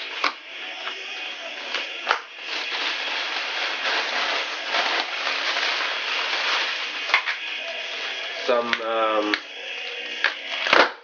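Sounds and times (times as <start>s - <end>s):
packaging crinkling and rustling: 1.7s - 8.5s.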